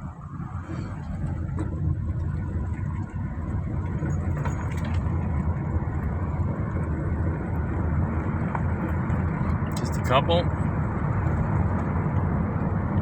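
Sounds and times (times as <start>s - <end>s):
car engine and tyres rumbling: 0.0s - 13.0s.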